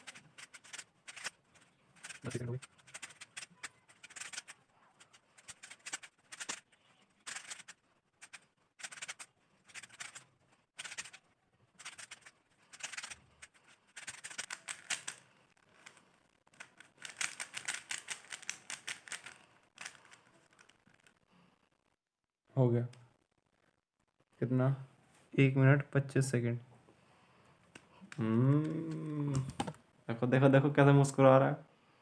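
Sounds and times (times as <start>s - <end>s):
plastic puzzle cube clacking: 0.0s - 21.2s, 27.7s - 29.8s.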